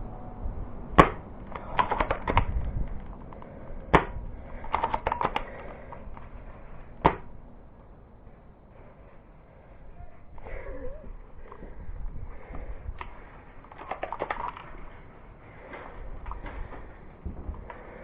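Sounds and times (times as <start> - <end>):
airsoft gun shots: 1.0 - 2.6, 3.9 - 5.6, 7.0 - 7.3.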